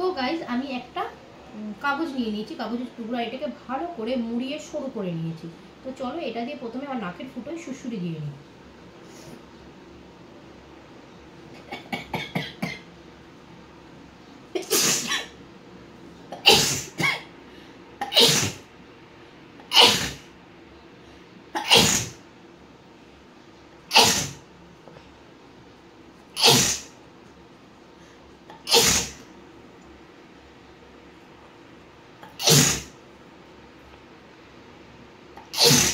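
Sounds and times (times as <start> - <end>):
woman sneezing: 14.6 - 15.4, 16.4 - 17.3, 18.0 - 18.7, 19.7 - 20.3, 21.6 - 22.2, 23.9 - 24.4, 26.4 - 26.9, 28.5 - 29.2, 32.3 - 33.0, 35.4 - 35.9.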